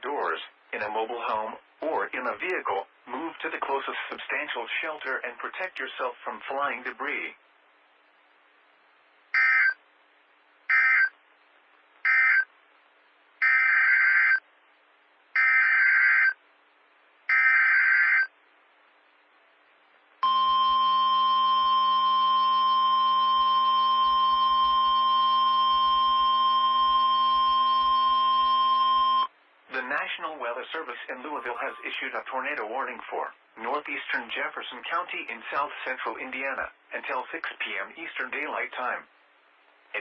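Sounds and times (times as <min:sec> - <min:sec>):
steady warning alarm tone: 0:12.1 - 0:12.5, 0:13.4 - 0:14.4, 0:15.4 - 0:16.4, 0:20.2 - 0:29.3.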